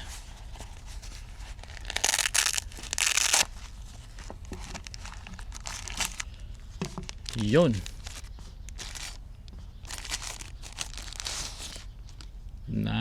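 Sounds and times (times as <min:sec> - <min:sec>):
pouch rustling: 0:00.0 - 0:09.2, 0:09.8 - 0:12.2
loud ripping: 0:01.5 - 0:03.6, 0:04.8 - 0:06.3, 0:09.8 - 0:11.9.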